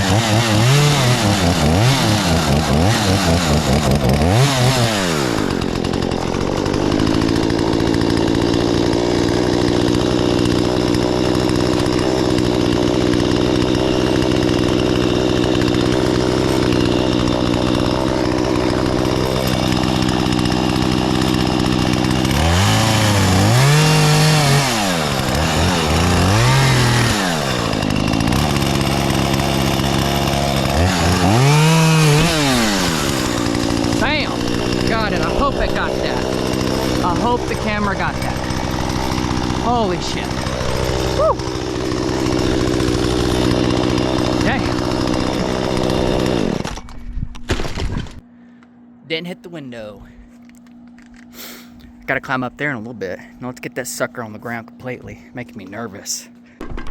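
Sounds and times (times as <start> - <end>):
chainsaw cutting wood: 0.0 - 48.2, 55.6 - 56.9.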